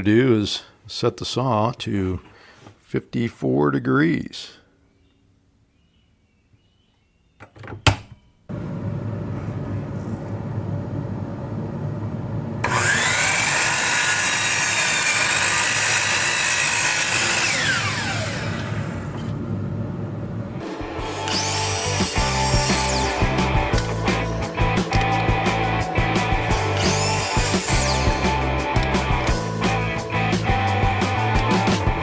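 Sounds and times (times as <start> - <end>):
miter saw motor running: 12.6 - 19.4, 20.6 - 30.0
saw blade cutting board: 12.6 - 19.4, 20.6 - 30.4.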